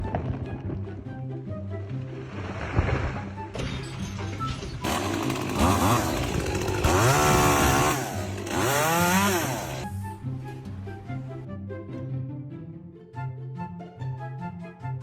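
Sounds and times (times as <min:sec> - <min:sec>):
background music: 0:00.0 - 0:15.0
chainsaw revving: 0:04.8 - 0:09.9.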